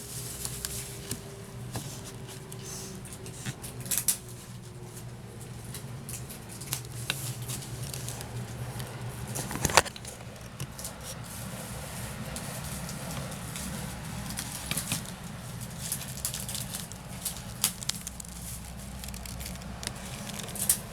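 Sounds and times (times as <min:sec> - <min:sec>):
handling clicks and taps: 0:06.6 - 0:11.0.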